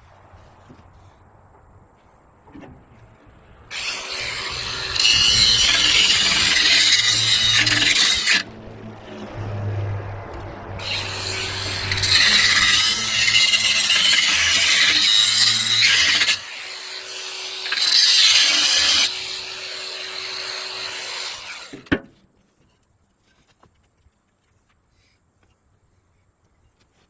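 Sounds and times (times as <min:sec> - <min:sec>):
cut-off wheel grinding steel pipe: 0:03.7 - 0:21.9.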